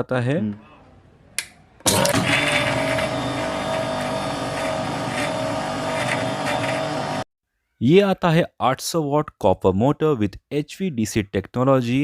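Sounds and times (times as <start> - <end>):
mixer grinder motor whir: 1.8 - 7.3.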